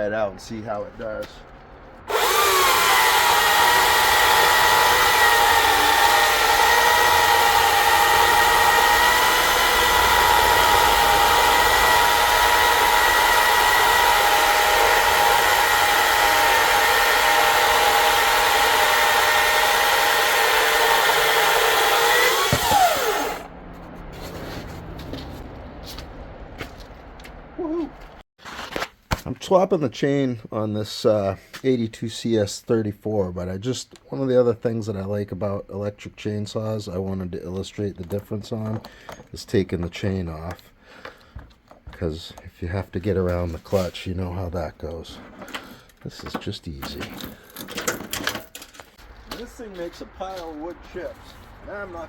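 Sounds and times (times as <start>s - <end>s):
electric chainsaw motor whine: 2.1s - 23.5s.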